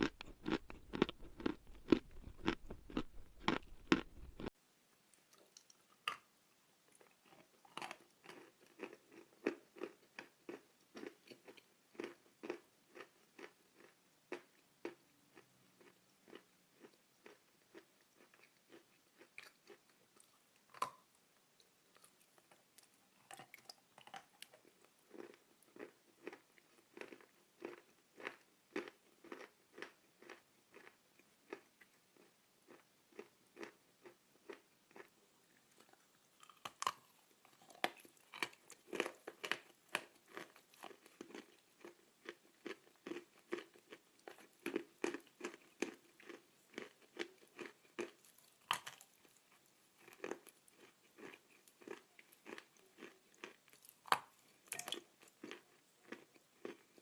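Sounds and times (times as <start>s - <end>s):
chalk being chewed: 0.0s - 4.5s.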